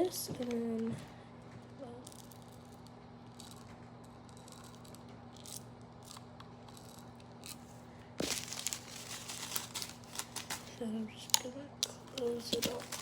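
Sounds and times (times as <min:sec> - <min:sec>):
steady low hum: 0:00.0 - 0:13.0
crinkling scrape: 0:06.7 - 0:10.8, 0:12.2 - 0:13.0
plastic pieces clicking and rustling: 0:08.2 - 0:13.0.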